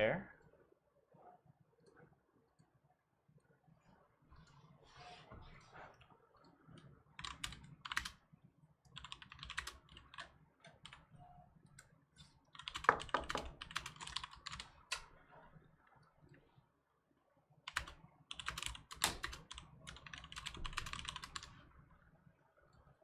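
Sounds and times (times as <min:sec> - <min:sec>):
rapid light clicking and tapping: 0:12.6 - 0:15.1.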